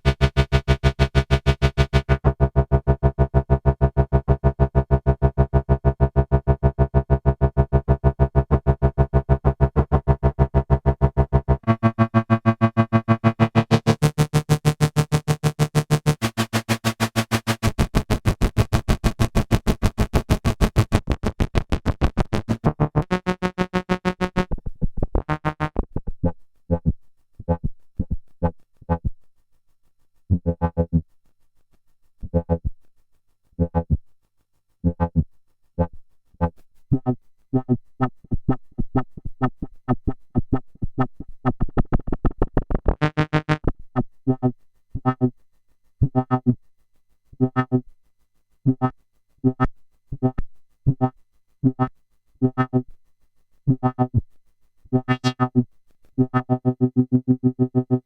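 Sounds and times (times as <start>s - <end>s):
buzzy analog synthesizer notes: 0.0s - 27.7s, 35.8s - 45.3s, 46.0s - 46.6s, 47.4s - 47.8s, 48.7s - 52.9s, 53.7s - 54.2s, 54.9s - 58.0s.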